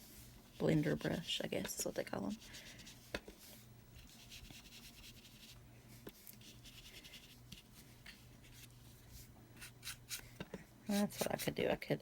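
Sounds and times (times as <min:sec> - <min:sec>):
brush rubbing on paper: 0:00.0 - 0:05.6, 0:06.3 - 0:10.2.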